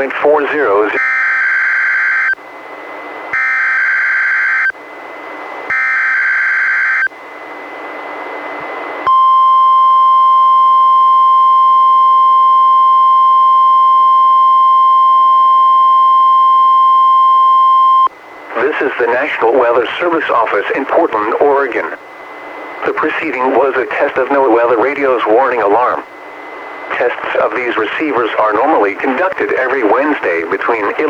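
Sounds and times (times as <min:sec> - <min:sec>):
radio hiss: 0:00.0 - 0:01.0, 0:18.4 - 0:31.0
steady warning alarm tone: 0:00.0 - 0:31.0.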